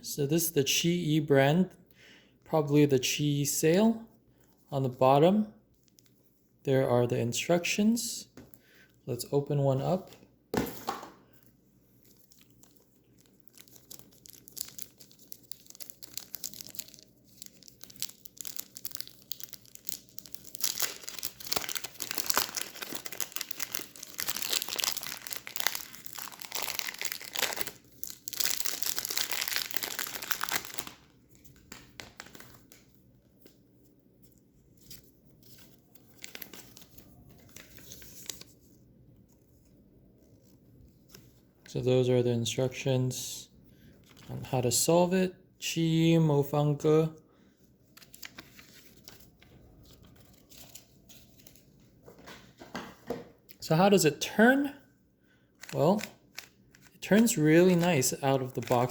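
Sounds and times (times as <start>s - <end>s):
packaging crinkling and tearing: 12.0s - 33.6s, 34.8s - 38.6s, 48.0s - 51.6s, 55.6s - 58.9s.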